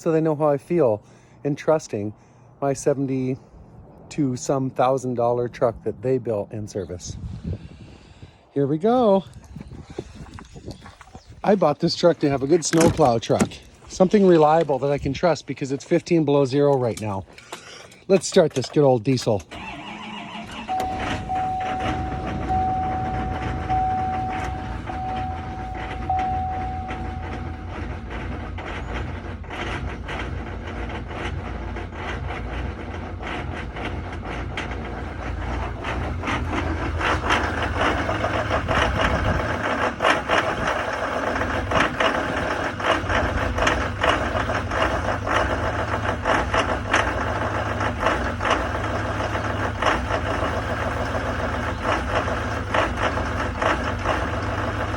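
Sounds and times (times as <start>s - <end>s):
diesel engine idling roughly: 19.5s - 54.9s
warning chime beeping: 20.6s - 28.0s.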